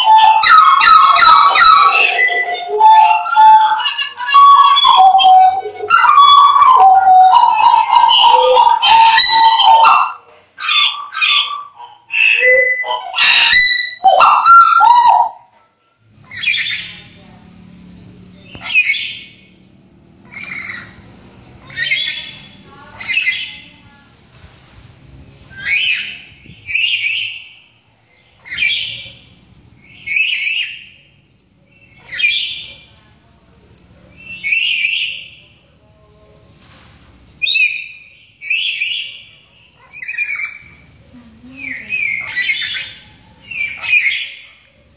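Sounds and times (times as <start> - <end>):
bird calling: 0.0 - 17.4, 18.0 - 23.9, 37.4 - 44.9.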